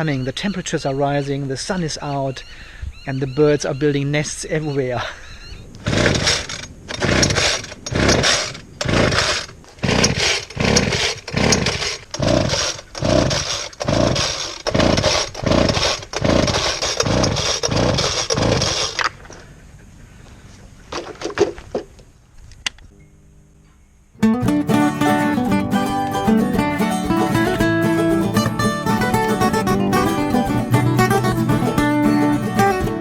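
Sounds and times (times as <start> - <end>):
guitar music: 24.2 - 33.0.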